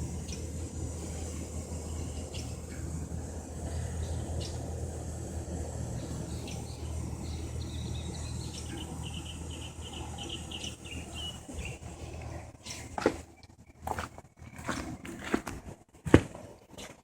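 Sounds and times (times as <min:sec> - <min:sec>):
low machine hum: 0:00.0 - 0:16.8
bird chirping: 0:04.0 - 0:04.6, 0:06.0 - 0:13.8.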